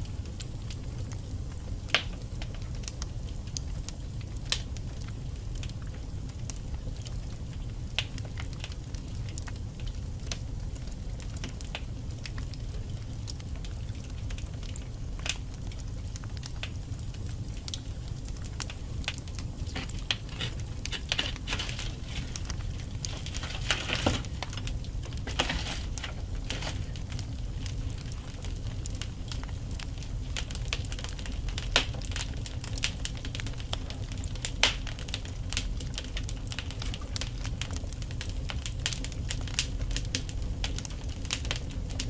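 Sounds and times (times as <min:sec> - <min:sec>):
fire flames rumbling: 0:00.0 - 0:42.0
logs crackling and popping: 0:00.0 - 0:42.0
fire hissing: 0:15.1 - 0:37.3.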